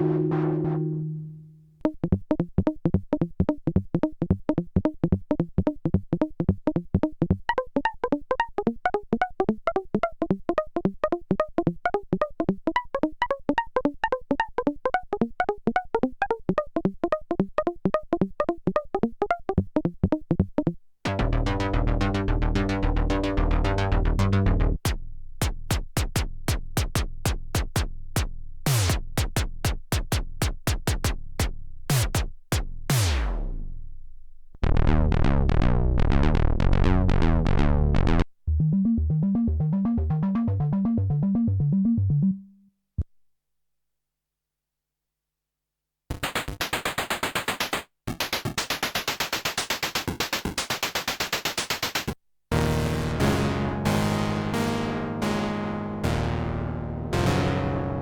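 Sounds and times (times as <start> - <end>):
synthesizer held chord: 0.0 - 1.6, 21.1 - 24.7, 38.5 - 42.5, 52.6 - 58.0
percussive synth notes falling pitch: 0.0 - 2.8, 14.1 - 33.7, 34.7 - 42.6
synthesizer plucked sequence: 0.0 - 24.9, 26.8 - 33.7, 34.6 - 42.7, 52.5 - 58.0.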